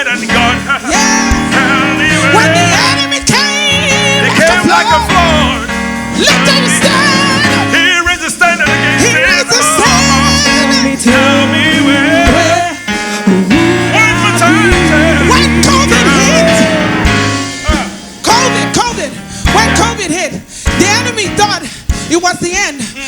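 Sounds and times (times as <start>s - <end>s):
bass: 0.0s - 8.0s, 8.6s - 22.6s
person singing with vibrato: 0.0s - 20.5s
sustained keyboard or guitar chords: 0.0s - 22.1s.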